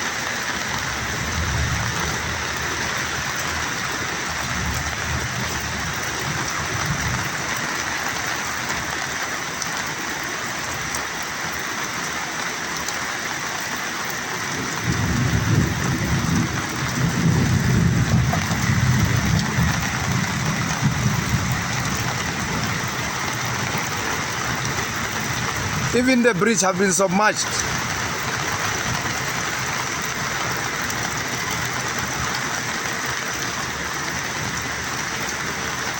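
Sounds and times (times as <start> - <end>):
heavy rain: 0.0 - 35.9.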